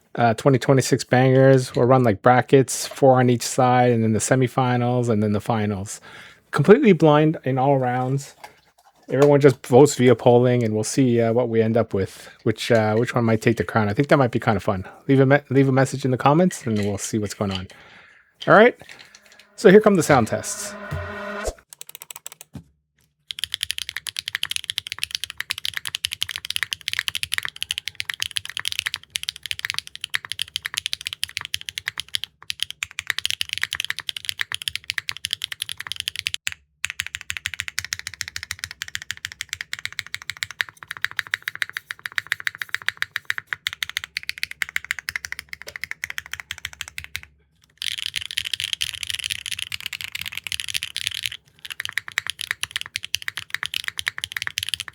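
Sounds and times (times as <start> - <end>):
mechanical keyboard typing: 19.0 - 22.5, 23.3 - 54.9.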